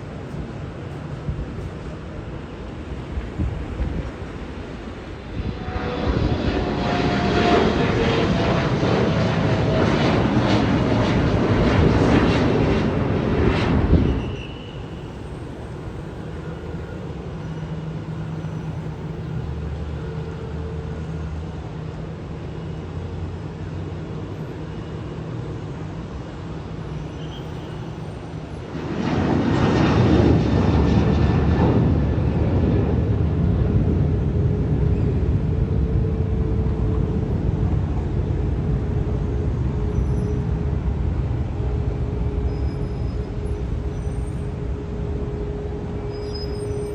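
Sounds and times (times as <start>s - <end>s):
jet engines roaring: 0.2s - 21.0s, 27.6s - 46.9s.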